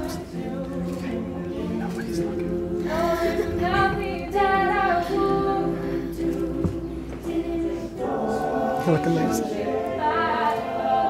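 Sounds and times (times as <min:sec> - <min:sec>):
voices singing a cappella: 0:00.0 - 0:11.0.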